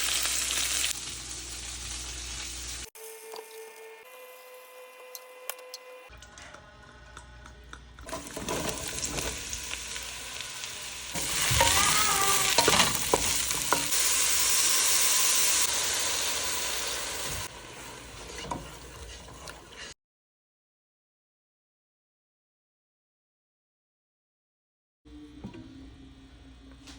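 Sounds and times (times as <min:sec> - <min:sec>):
food sizzling in a pan: 0:00.0 - 0:04.7, 0:08.1 - 0:20.0
utensil stirring and scraping: 0:18.0 - 0:19.9.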